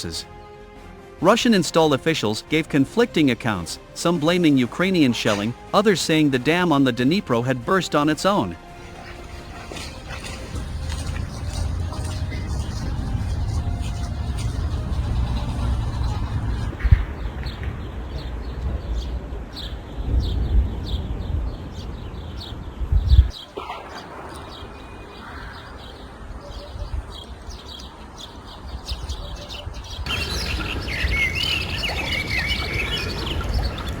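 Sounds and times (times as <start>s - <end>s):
warbling birdsong: 1.2s - 34.0s
small birds chirping: 4.2s - 34.0s
low rumble: 10.4s - 17.4s.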